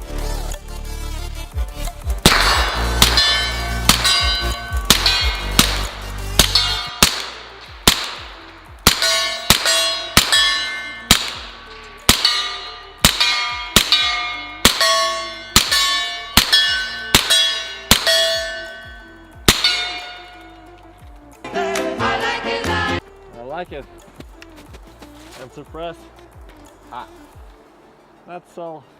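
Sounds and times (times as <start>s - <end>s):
rifle shots hitting steel targets: 2.2s - 20.8s.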